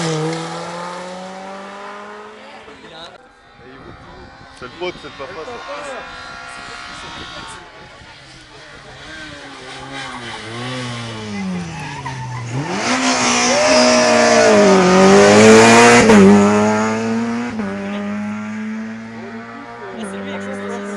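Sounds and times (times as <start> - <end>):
rally car passing: 0.0 - 20.9.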